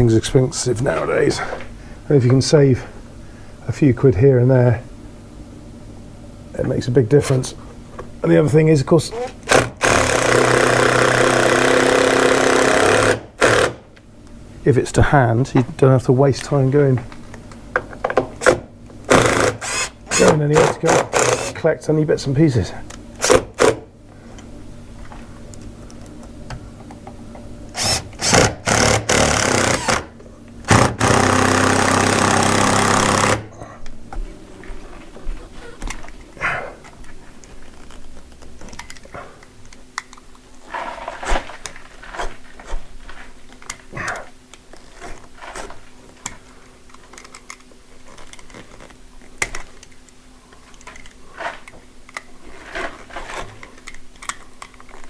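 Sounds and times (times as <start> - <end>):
power drill running: 9.5 - 13.8, 19.1 - 21.6, 27.8 - 30.1, 30.7 - 33.4
tools and parts clicking: 38.6 - 40.4, 46.2 - 52.3, 53.3 - 55.0.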